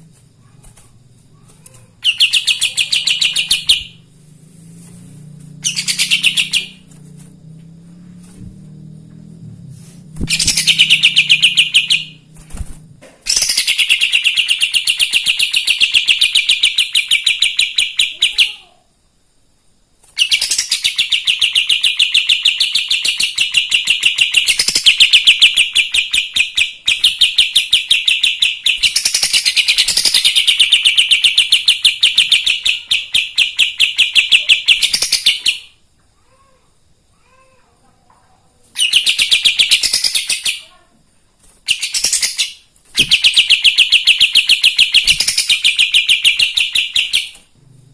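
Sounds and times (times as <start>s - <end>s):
songbird rapid sharp chirps: 1.7s - 4.1s, 5.6s - 7.1s, 9.8s - 12.4s, 13.3s - 18.5s, 20.2s - 35.8s, 38.8s - 40.7s, 41.6s - 47.5s.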